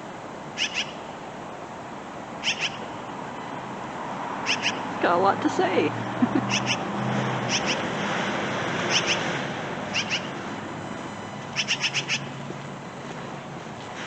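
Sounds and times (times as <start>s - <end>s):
crow calling: 0.6s - 1.0s, 2.4s - 2.9s, 4.4s - 4.9s, 6.5s - 6.9s, 7.5s - 7.9s, 8.9s - 9.3s, 9.9s - 10.4s, 11.6s - 12.4s.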